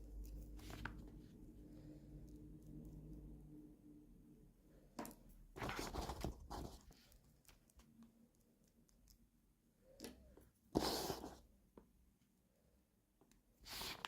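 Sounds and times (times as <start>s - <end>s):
plastic and cardboard rustling: 5.6s - 7.2s.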